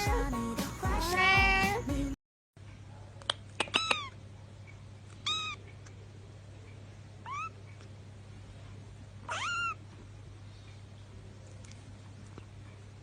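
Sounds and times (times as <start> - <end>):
kitten mewing: 3.6 - 4.2, 5.2 - 5.8, 7.2 - 7.6, 9.2 - 9.8.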